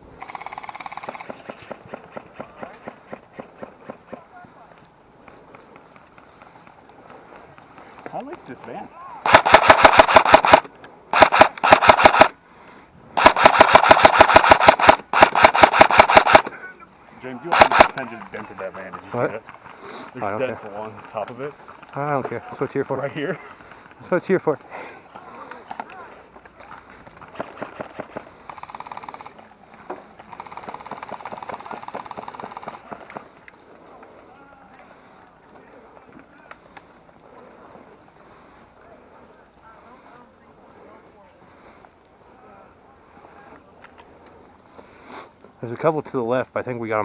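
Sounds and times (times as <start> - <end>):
airsoft rifle firing bursts: 0.2 - 4.2, 9.2 - 12.4, 13.2 - 16.5, 17.5 - 18.0, 27.3 - 29.4, 30.2 - 33.3
sharp clicks of pellet impacts: 5.2 - 12.4, 13.2 - 16.5, 17.5 - 18.6.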